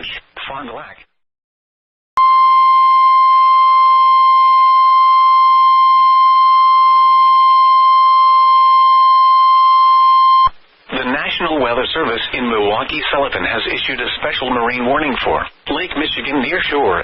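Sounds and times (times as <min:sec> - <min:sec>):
steady warning alarm tone: 0:02.2 - 0:10.5.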